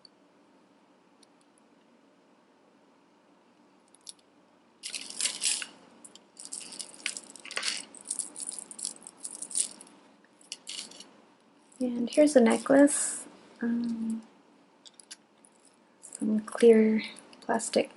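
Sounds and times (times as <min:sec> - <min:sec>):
jewelry and beads rattling: 0:04.8 - 0:13.0, 0:14.8 - 0:16.6.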